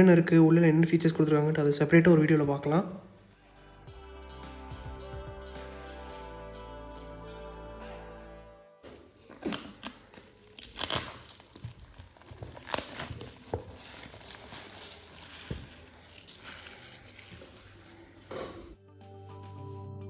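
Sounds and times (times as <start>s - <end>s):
shrink wrap tearing and crinkling: 9.1s - 18.6s.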